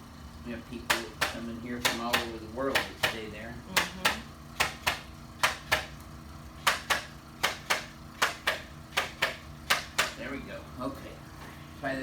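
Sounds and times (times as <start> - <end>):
sharp double clicks: 6.6 - 10.2.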